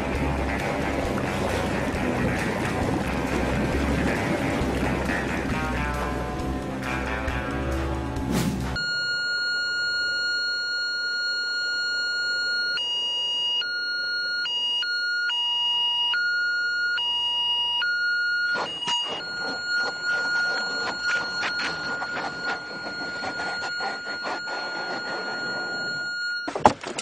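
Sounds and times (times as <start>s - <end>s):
electronic alarm beep: 8.8s - 26.7s.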